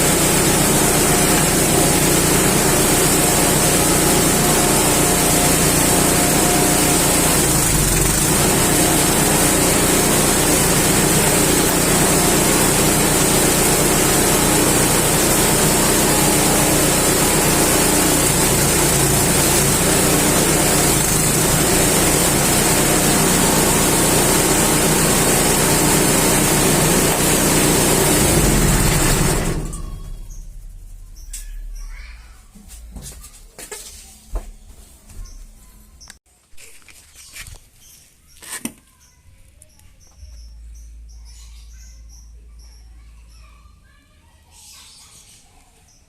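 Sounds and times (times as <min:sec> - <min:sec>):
coconut dehusking machine running: 0:00.0 - 0:31.7.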